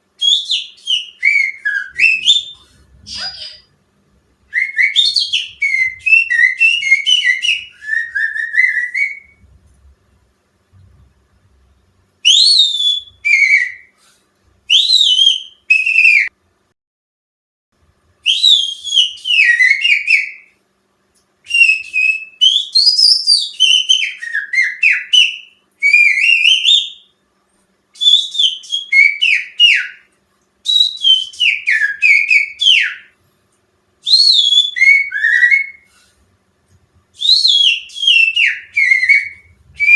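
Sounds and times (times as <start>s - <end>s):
finger whistling birdsong: 0.2s - 3.7s, 4.5s - 9.4s, 12.2s - 14.0s, 14.7s - 16.3s, 18.3s - 20.6s, 21.5s - 27.2s, 28.0s - 33.2s, 34.0s - 35.9s, 37.1s - 39.9s.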